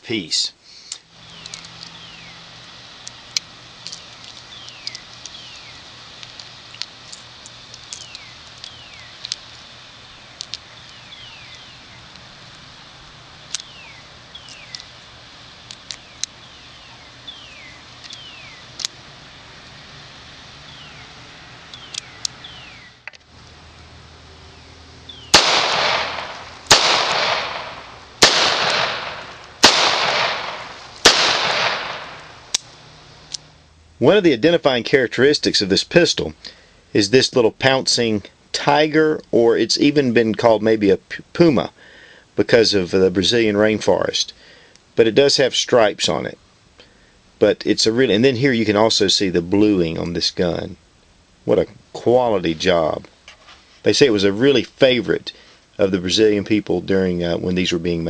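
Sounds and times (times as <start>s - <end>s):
steady low hum: 0.0s - 58.0s
revolver gunshots with echo: 25.3s - 32.4s.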